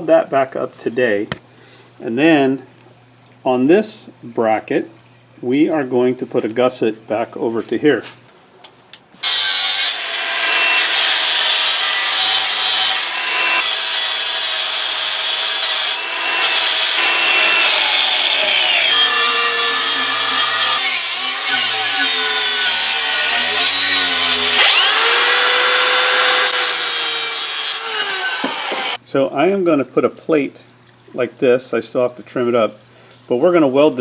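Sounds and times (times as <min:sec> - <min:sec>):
angle grinder grinding steel: 0:09.2 - 0:29.0.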